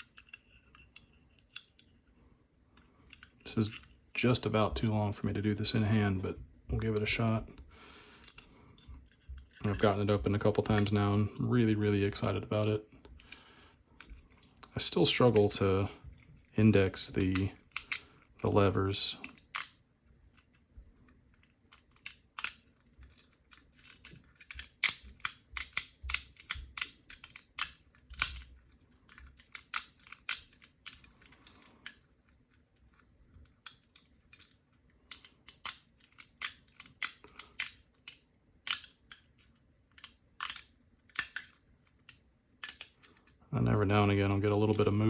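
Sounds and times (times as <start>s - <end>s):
lock pick clicking in padlock: 21.7s - 32.0s, 33.7s - 43.2s.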